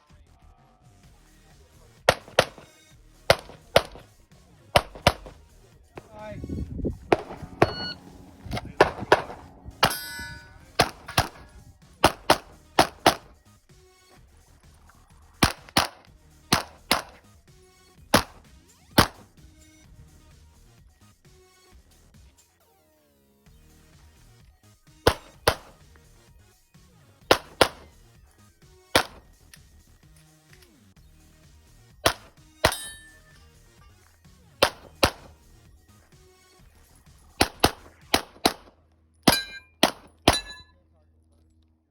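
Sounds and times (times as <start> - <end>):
pistol shots: 2.1 - 4.2, 4.8 - 5.4, 7.1 - 13.3, 15.4 - 17.2, 18.1 - 18.4, 19.0 - 19.3, 25.1 - 25.8, 27.3 - 28.0, 28.9 - 29.4, 32.0 - 33.2, 34.6 - 35.4, 37.4 - 38.7, 39.3 - 40.6
metallic ringing: 6.6 - 12.3, 32.7 - 33.6, 39.3 - 40.8.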